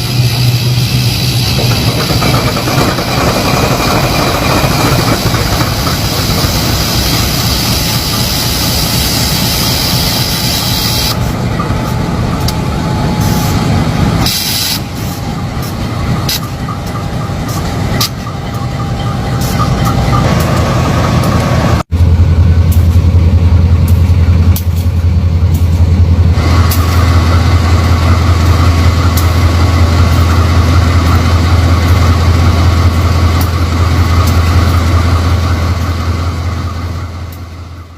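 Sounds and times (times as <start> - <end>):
locomotive diesel engine running: 0.0 - 37.9.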